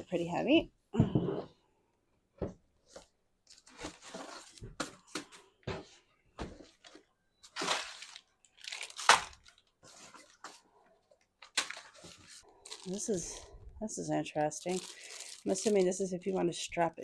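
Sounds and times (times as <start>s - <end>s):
packaging rustling and scraping: 2.8s - 13.5s, 14.2s - 16.0s.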